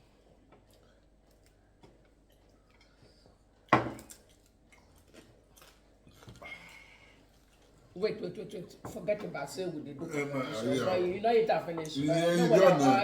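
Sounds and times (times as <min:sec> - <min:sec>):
chewing: 0:00.6 - 0:07.8.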